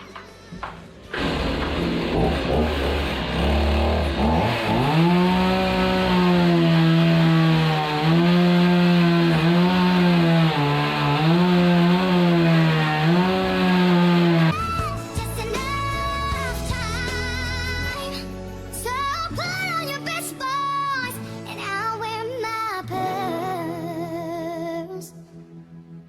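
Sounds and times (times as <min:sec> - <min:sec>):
chainsaw revving: 0:01.1 - 0:17.3.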